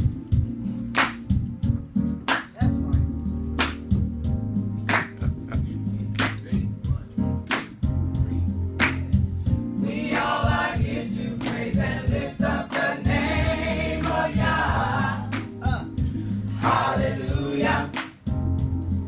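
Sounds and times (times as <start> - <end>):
instrumental accompaniment with beat: 0.0 - 19.0
choir singing: 9.8 - 15.5, 16.4 - 18.0.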